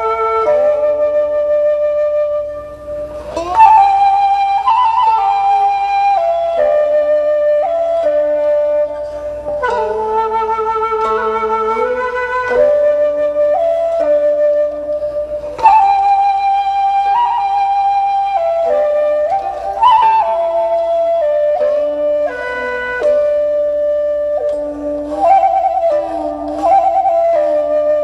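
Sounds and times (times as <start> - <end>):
slow flute melody: 0.0 - 28.0.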